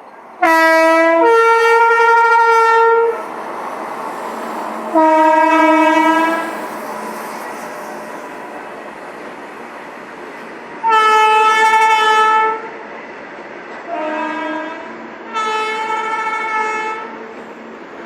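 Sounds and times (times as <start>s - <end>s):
freight train rumble: 0.0s - 18.0s
locomotive air horn: 0.4s - 3.2s, 4.8s - 8.4s, 10.8s - 12.7s, 13.9s - 17.2s.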